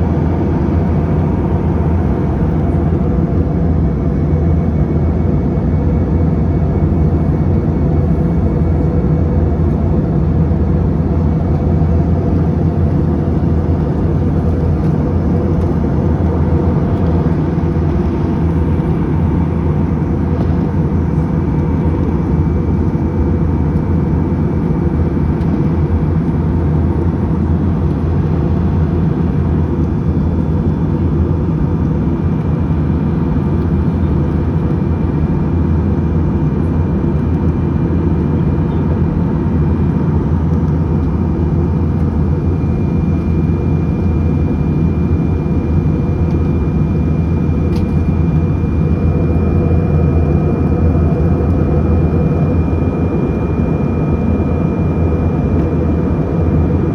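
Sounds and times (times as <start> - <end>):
airliner engine drone in cabin: 0.0 - 56.9.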